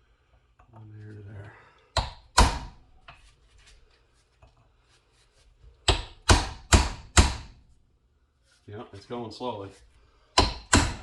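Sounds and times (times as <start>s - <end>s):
hammer striking metal tool: 5.9s - 7.5s, 10.4s - 11.0s.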